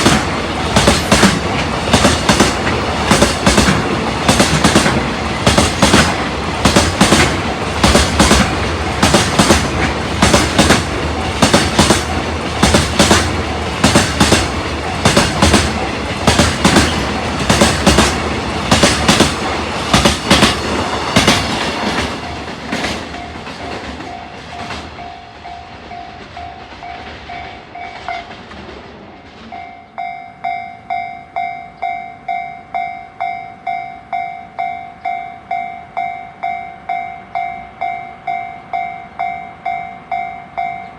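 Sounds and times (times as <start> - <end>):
train wheels clacking on rails: 0.0 - 40.9
level crossing warning bell: 22.1 - 28.3, 29.5 - 40.9.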